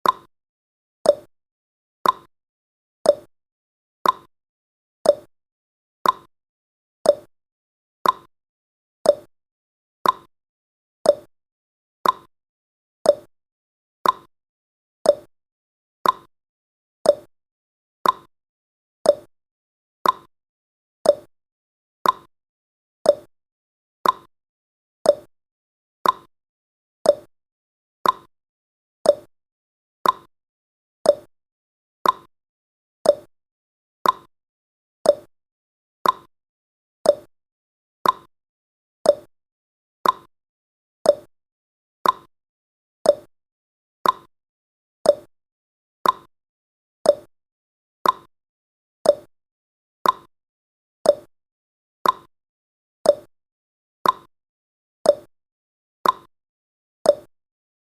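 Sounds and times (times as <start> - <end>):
clock ticking: 36.0 - 36.3, 38.0 - 38.3, 46.0 - 46.3.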